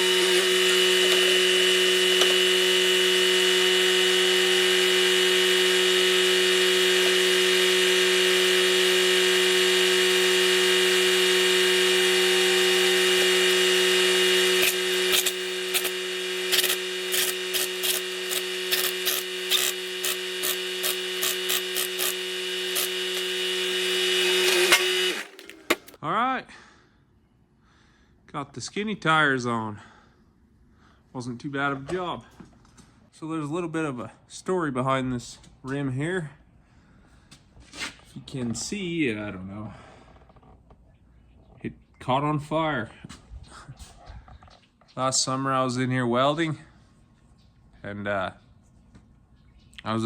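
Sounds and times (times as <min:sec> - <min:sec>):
power tool whining: 0:00.0 - 0:26.0.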